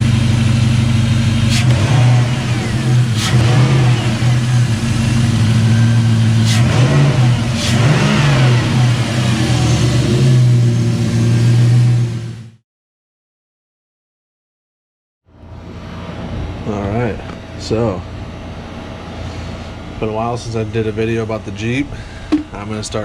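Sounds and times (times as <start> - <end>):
car engine idling and revving: 0.0 - 12.6.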